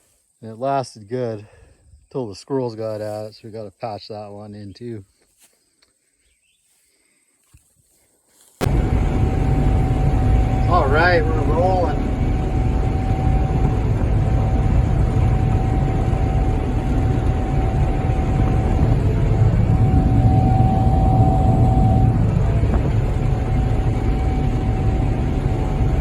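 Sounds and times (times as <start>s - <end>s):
combine harvester drone: 8.6s - 26.0s
thin steady whine: 8.6s - 26.0s.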